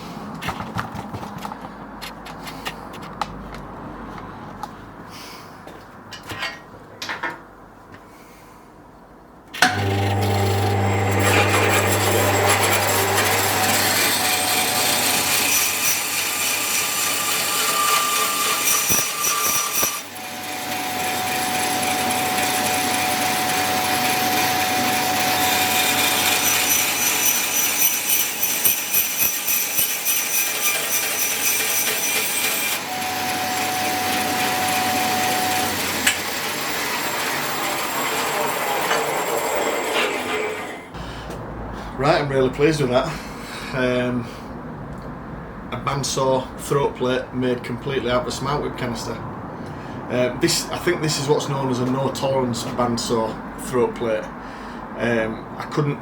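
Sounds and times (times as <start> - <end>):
bandsaw sawing: 9.6 - 41.0.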